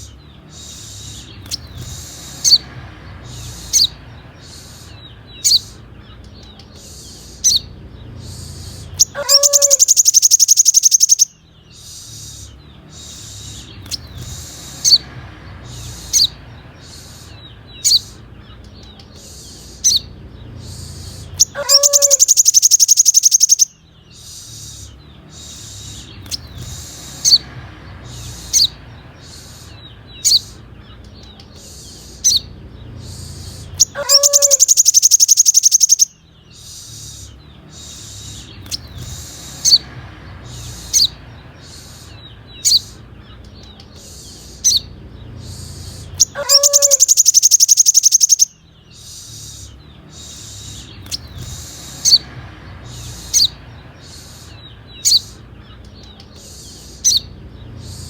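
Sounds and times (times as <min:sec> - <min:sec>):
bird chips: 0:00.0 - 0:58.0
bird buzzing trill: 0:08.3 - 0:15.0, 0:20.9 - 0:24.8, 0:33.1 - 0:39.8, 0:45.6 - 0:52.2.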